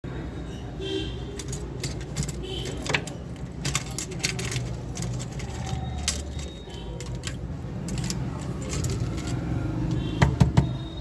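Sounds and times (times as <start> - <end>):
toy gun parts clicking and rattling: 1.4 - 9.5.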